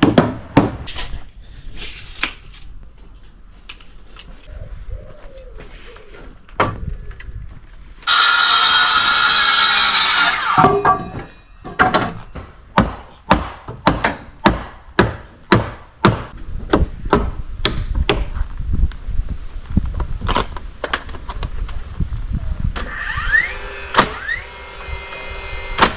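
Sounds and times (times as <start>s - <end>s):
power tool running: 8.0s - 10.7s, 22.9s - 25.9s
hammer striking timber: 9.9s - 18.3s.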